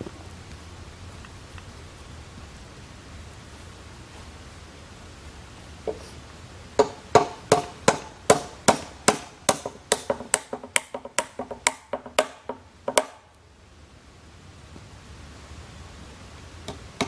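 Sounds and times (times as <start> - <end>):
hammer driving nails into wood: 6.8 - 13.2.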